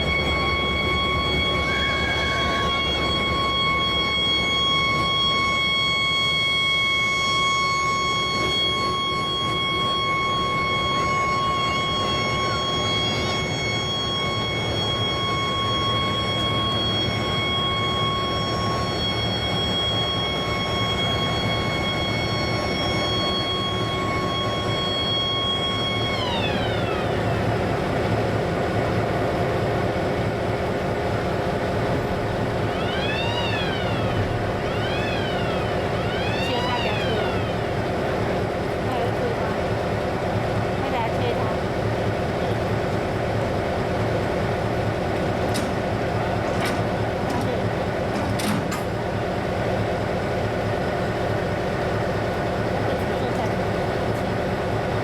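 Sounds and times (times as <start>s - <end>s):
high train whine: 0.0s - 55.0s
train rumbling past: 0.0s - 55.0s.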